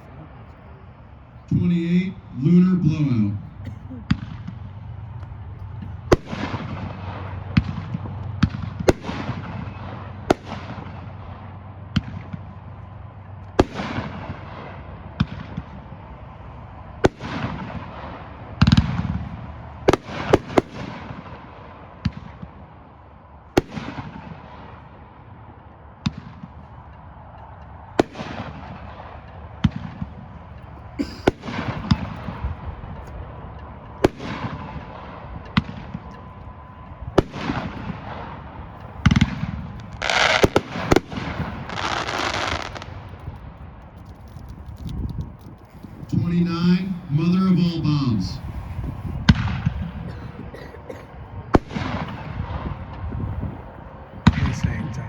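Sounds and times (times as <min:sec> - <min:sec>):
noisy haze: 0:00.0 - 0:55.0
firework bursting reports: 0:30.7 - 0:32.8, 0:37.0 - 0:50.1.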